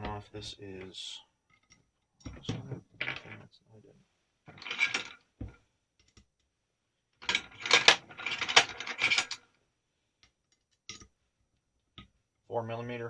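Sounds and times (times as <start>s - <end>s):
metal clicking and rattling of parts: 4.5s - 5.2s, 7.2s - 9.4s.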